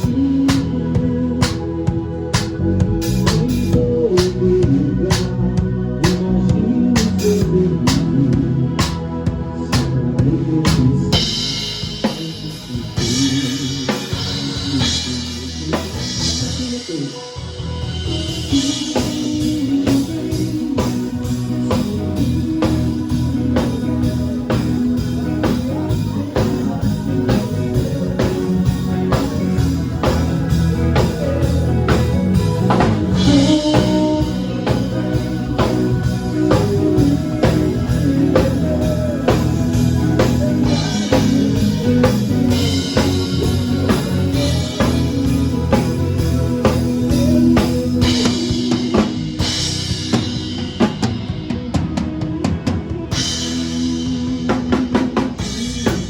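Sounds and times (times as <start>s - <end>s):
live band playing: 0.0s - 56.0s.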